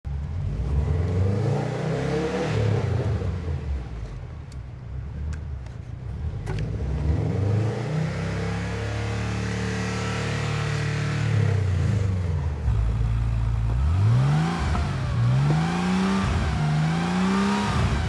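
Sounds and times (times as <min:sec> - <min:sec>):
car engine revving: 0:06.6 - 0:18.0.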